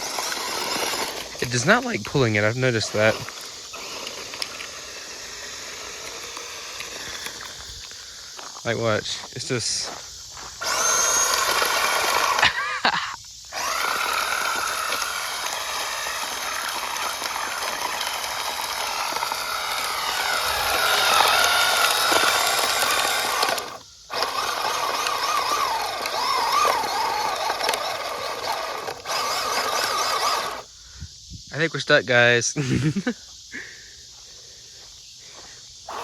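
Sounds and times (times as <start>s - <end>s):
electric motor whining: 0.0s - 8.1s, 10.6s - 12.9s, 13.5s - 30.7s
tires spinning on gravel: 0.0s - 12.8s, 13.5s - 30.7s.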